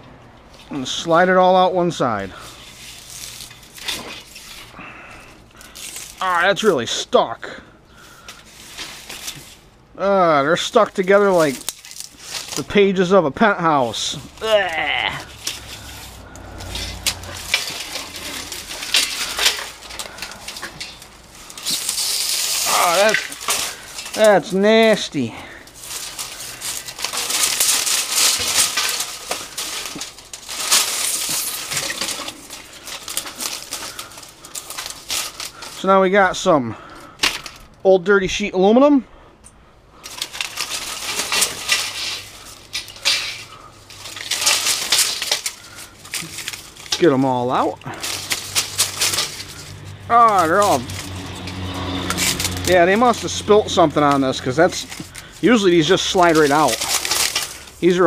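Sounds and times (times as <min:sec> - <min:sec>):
metal blind slats clattering: 0:15.2 - 0:24.9.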